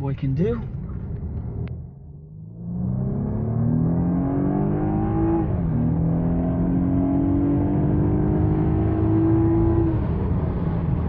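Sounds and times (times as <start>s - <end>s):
car engine accelerating: 0.6s - 11.0s.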